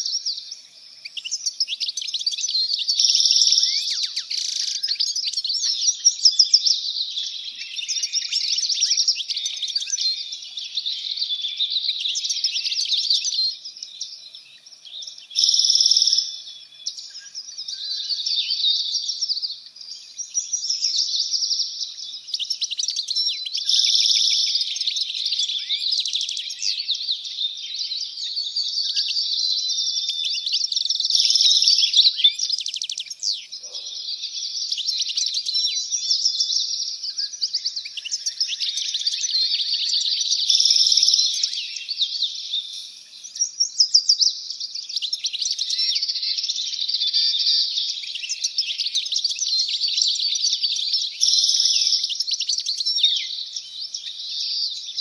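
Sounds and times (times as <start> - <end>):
songbirds chirping chorus: 0.0 - 55.0.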